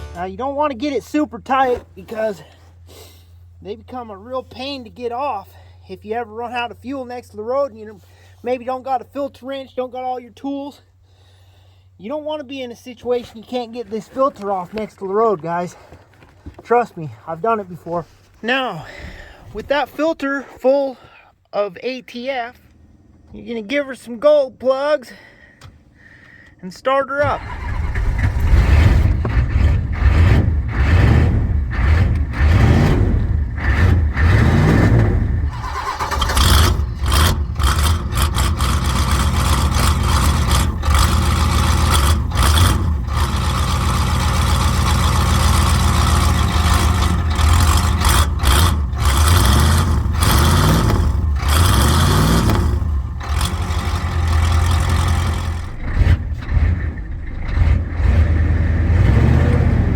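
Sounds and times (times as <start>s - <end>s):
diesel engine running: 0.0s - 5.8s, 27.2s - 59.9s.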